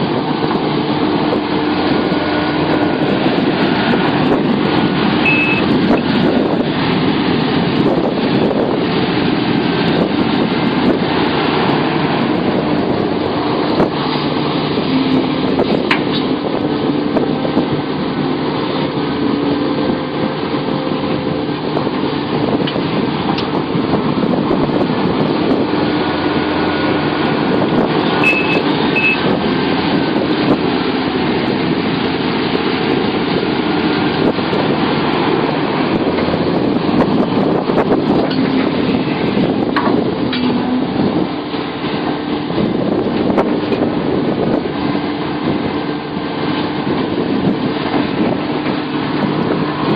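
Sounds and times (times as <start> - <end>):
excavator diesel engine running: 0.0 - 49.9
double beep: 5.2 - 5.7, 28.2 - 29.3.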